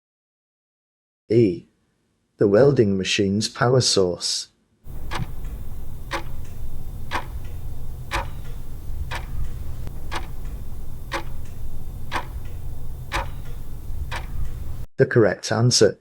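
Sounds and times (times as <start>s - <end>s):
clock ticking: 4.9s - 14.9s
low hum: 4.9s - 14.9s.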